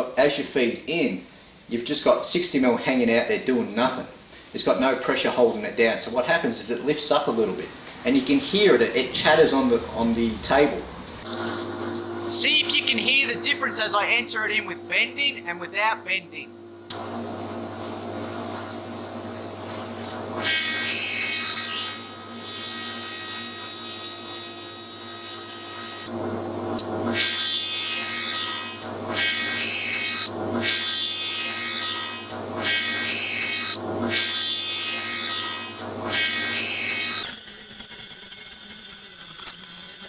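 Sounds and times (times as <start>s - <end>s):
thickness planer cutting boards: 11.2s - 13.8s, 16.9s - 40.0s
planer motor hum: 11.2s - 15.5s, 16.5s - 37.2s.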